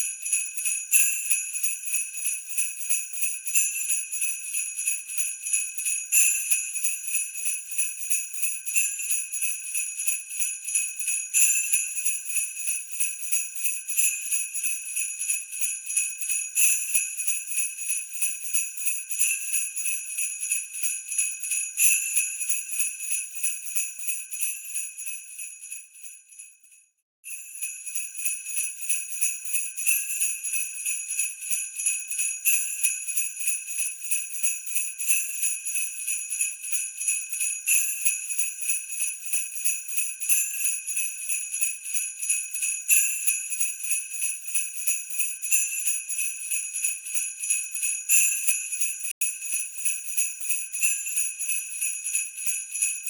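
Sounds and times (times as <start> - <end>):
sleigh bells jingling: 27.6 - 38.4, 41.2 - 53.0.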